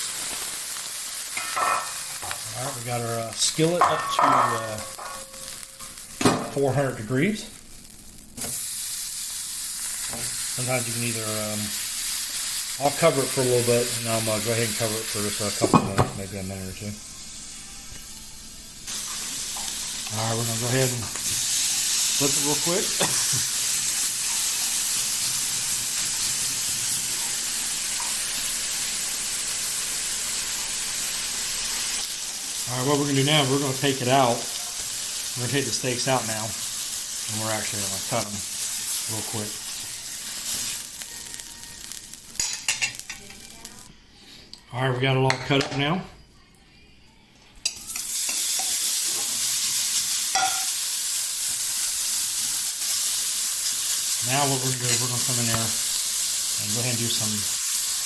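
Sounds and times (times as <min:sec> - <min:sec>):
steaks sizzling in a skillet: 0:00.0 - 0:43.9, 0:47.6 - 0:58.0
utensil clinking against pan: 0:03.8 - 0:05.5.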